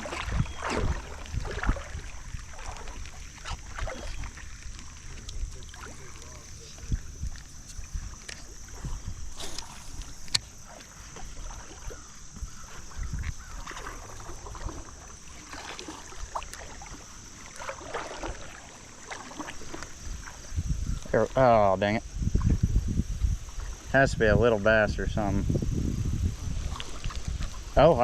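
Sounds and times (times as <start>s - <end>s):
wind rumbling on microphone: 0.0s - 15.2s, 19.4s - 28.0s
water sloshing and splashing: 0.0s - 25.2s, 26.1s - 28.0s.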